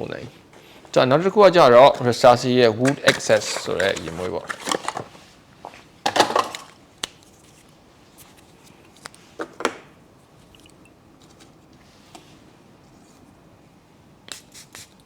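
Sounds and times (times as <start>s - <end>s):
box rustling: 2.9s - 5.2s.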